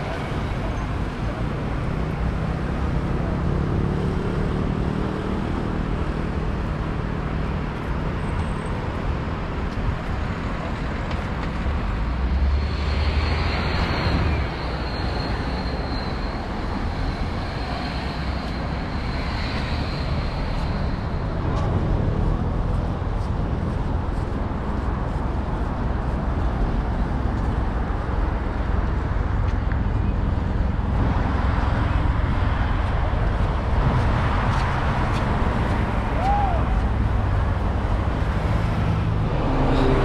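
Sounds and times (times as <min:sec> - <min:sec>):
road traffic passing: 0:00.0 - 0:40.0
thin high whine: 0:12.6 - 0:21.4
loud vehicle rumbling past: 0:33.8 - 0:40.0.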